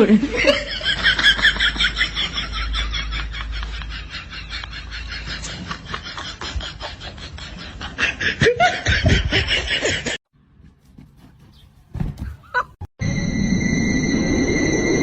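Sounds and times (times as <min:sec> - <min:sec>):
people laughing: 0:00.0 - 0:10.2.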